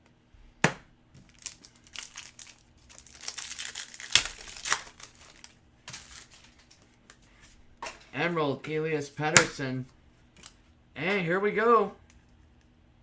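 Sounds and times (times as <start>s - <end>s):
foil wrapper crinkling and tearing: 1.2s - 6.9s.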